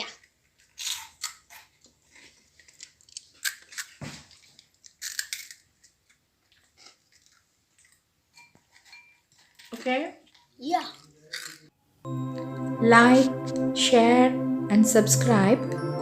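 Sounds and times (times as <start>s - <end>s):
cereal crunching as chewed: 0.6s - 8.1s.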